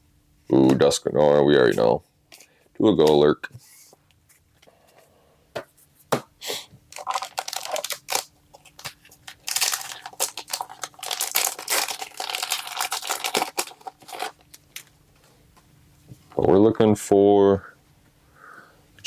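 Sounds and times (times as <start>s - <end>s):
foil wrapper tearing and crinkling: 6.9s - 14.9s.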